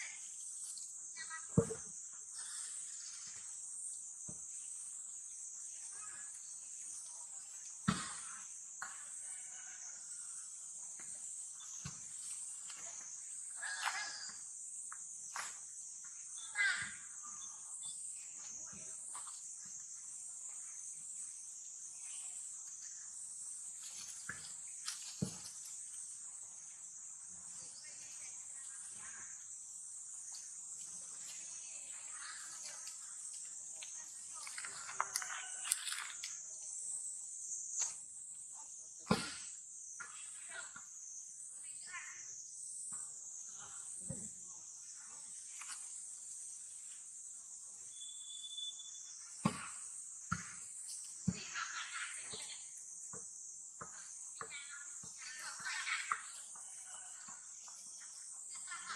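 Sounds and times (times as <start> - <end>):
insects chirping chorus: 0.0 - 58.9
sharp thump: 39.0 - 39.5.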